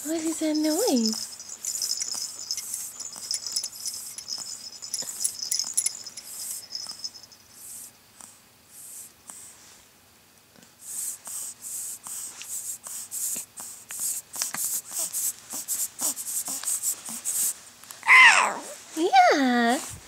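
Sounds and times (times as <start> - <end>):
baby making breathy hissing noises: 10.8 - 17.6.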